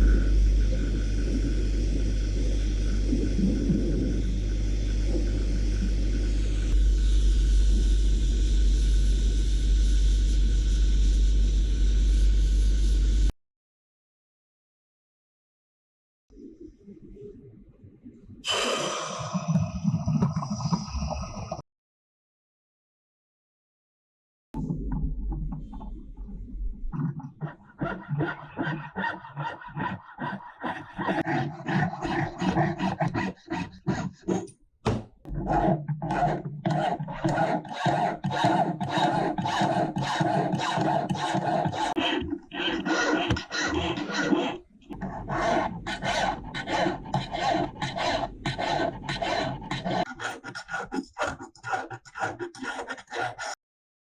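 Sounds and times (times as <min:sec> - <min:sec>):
hand file rasping on metal: 0:27.4 - 0:34.6, 0:35.3 - 0:53.6.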